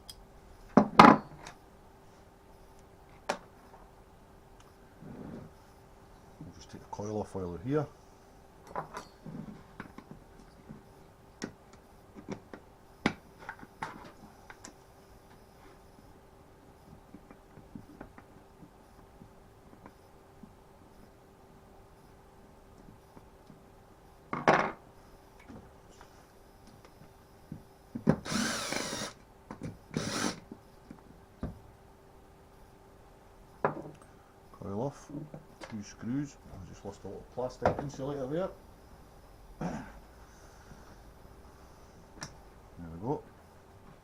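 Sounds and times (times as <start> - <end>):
power screwdriver running: 28.2 - 29.2, 30.0 - 30.4.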